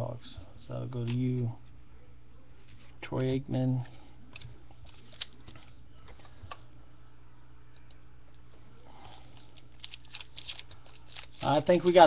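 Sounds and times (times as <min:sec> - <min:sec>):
steady low hum: 0:00.0 - 0:12.0
trading cards rustling and clicking: 0:04.3 - 0:06.6, 0:09.0 - 0:12.0.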